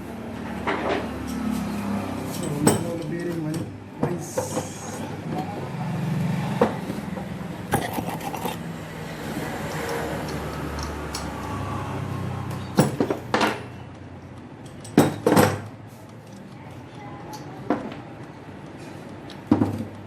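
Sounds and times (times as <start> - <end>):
metal parts knocking and clinking: 9.9 - 11.6, 14.6 - 15.7.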